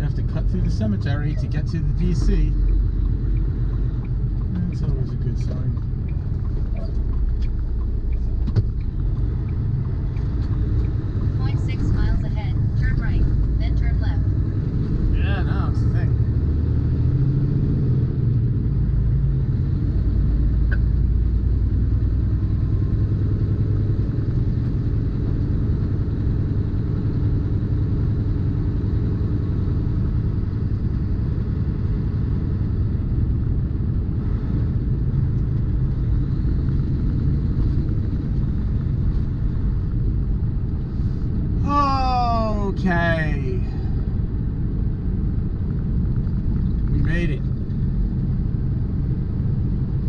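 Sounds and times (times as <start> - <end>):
truck diesel engine droning: 39.5 - 44.4.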